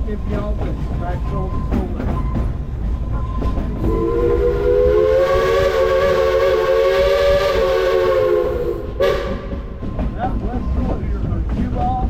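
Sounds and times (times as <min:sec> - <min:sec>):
train rumbling: 0:00.0 - 0:12.0
steam locomotive whistle: 0:03.4 - 0:09.7.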